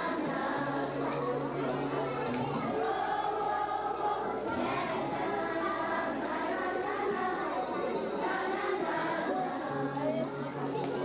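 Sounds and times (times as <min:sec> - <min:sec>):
vocal group singing gospel: 0:00.0 - 0:10.8.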